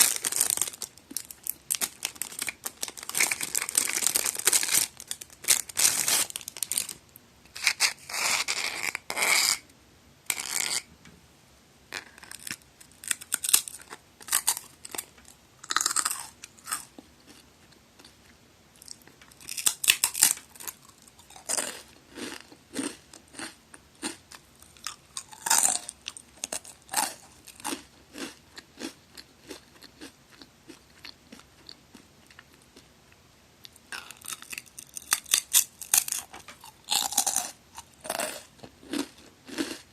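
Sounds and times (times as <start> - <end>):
crunching bites of crackers: 12.0 - 17.4, 18.8 - 32.6, 33.9 - 39.9.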